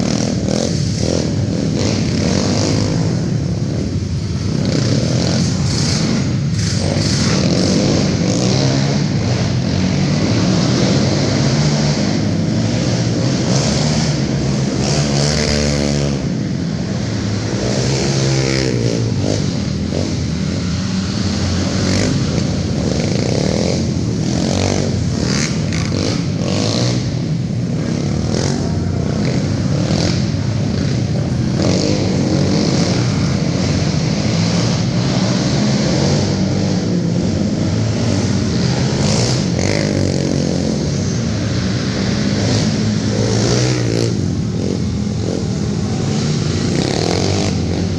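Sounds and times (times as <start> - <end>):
racing quad engines revving: 0.0 - 47.9.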